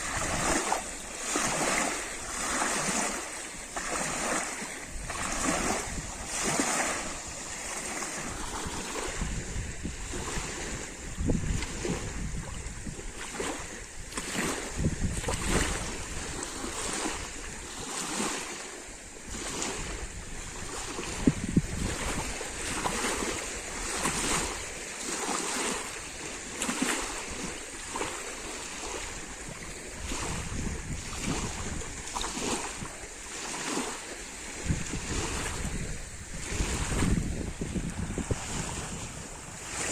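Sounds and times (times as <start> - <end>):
lake water lapping at shore: 0.0 - 39.9
wind rumbling on microphone: 0.0 - 39.9.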